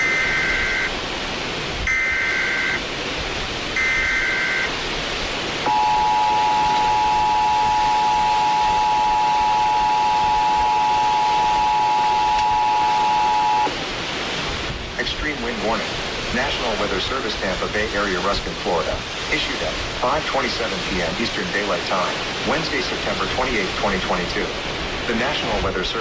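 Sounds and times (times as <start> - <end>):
harsh two-tone attention signal: 0.0 - 0.9, 1.9 - 2.8, 3.8 - 4.7, 5.6 - 13.7
screeching digital bursts: 0.0 - 0.9, 1.9 - 2.8, 3.8 - 4.7, 5.6 - 13.7
constant hiss: 0.0 - 26.0.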